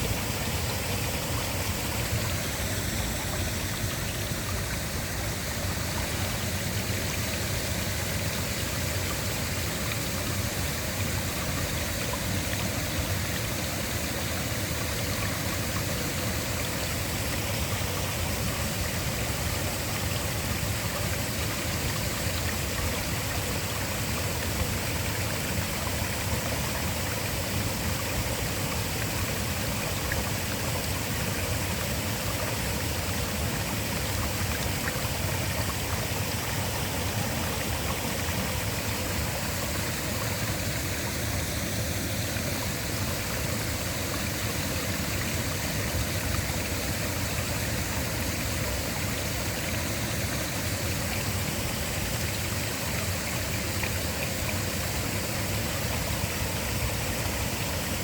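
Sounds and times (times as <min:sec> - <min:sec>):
waterfall rushing: 0:11.8 - 0:58.0.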